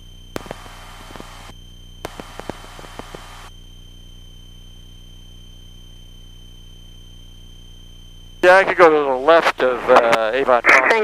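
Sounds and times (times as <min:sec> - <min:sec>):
high-pitched whine: 0:00.0 - 0:11.0
aircraft engine drone: 0:00.1 - 0:11.0
radio hiss with clicks: 0:00.3 - 0:03.5, 0:08.4 - 0:11.0.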